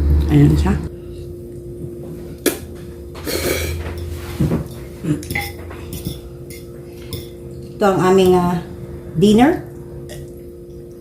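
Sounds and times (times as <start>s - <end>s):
cutlery clinking on plates: 3.2s - 7.4s.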